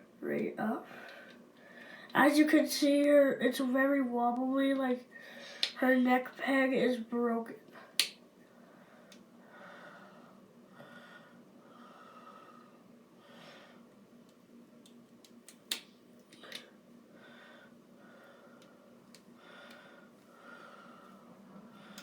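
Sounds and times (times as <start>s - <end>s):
faint breathing: 0.8s - 2.2s, 5.1s - 5.8s, 7.8s - 14.0s, 16.4s - 22.0s.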